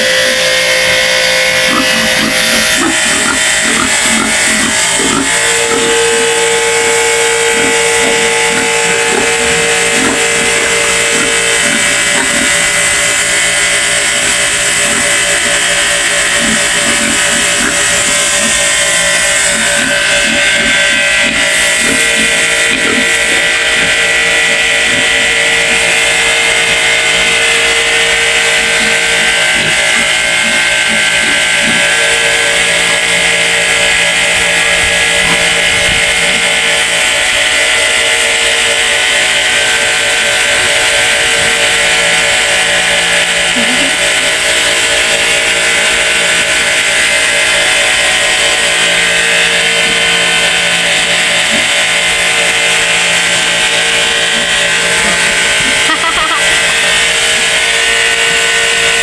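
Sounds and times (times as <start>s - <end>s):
small motor droning: 0.0s - 59.0s.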